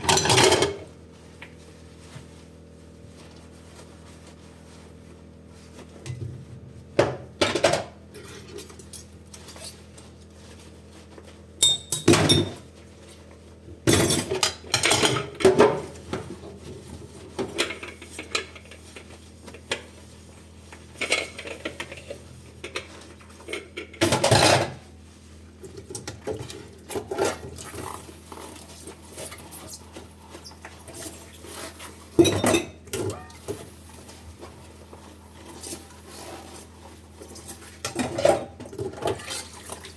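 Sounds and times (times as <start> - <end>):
dishes and cutlery clattering: 0.0 - 0.8, 11.6 - 12.6, 32.2 - 33.5.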